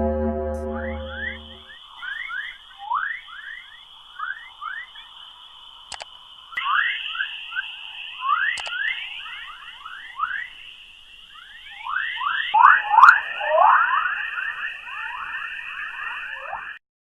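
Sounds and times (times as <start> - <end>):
rising chirps: 0.0 - 2.5
steady high hiss: 0.0 - 16.8
sharp clicks: 5.9 - 6.7, 8.6 - 8.9.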